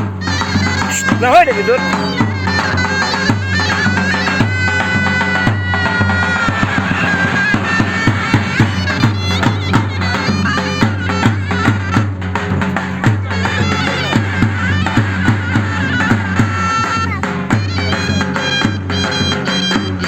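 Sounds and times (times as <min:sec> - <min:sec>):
shrill double-reed melody: 0:00.0 - 0:12.0
bass drum beats: 0:00.0 - 0:20.0.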